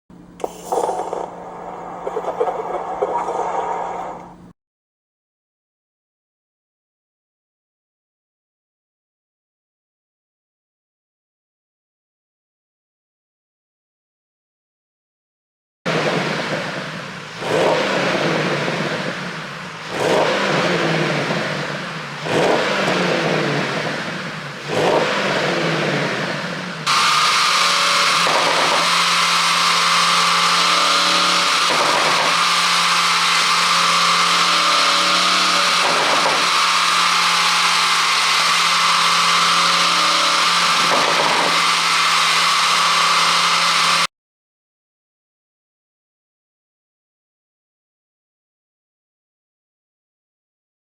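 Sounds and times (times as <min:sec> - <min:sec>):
car engine revving and crackling: 0:00.2 - 0:04.5, 0:15.9 - 0:44.1.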